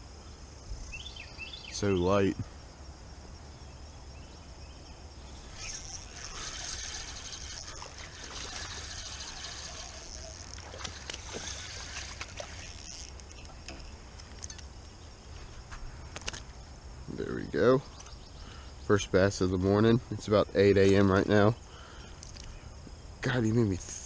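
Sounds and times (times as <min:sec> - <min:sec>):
crickets chirping: 0:00.0 - 0:24.0
spinning reel cranking: 0:05.4 - 0:13.5
fish splashing at surface: 0:06.2 - 0:12.8.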